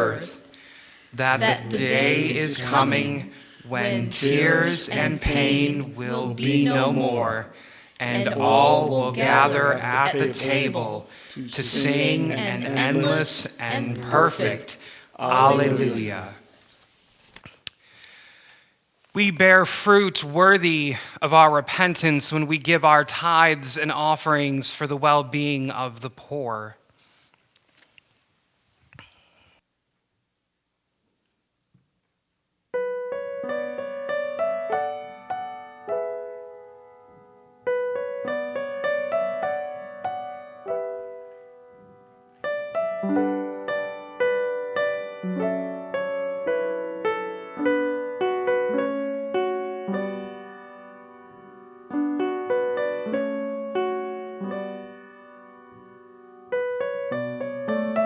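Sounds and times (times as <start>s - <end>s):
solo piano music: 32.8s - 58.0s.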